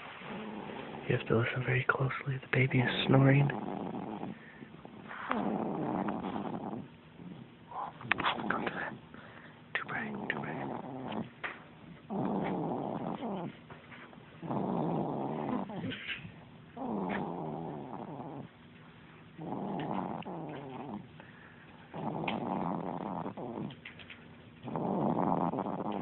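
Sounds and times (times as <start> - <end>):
person snoring: 14.4 - 16.0, 24.7 - 26.0.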